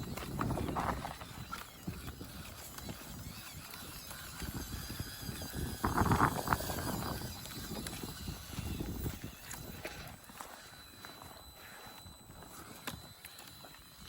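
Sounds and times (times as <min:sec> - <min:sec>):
toy car knocking over rough ground: 0:00.0 - 0:10.3
faint motor and gear whine: 0:00.0 - 0:14.0.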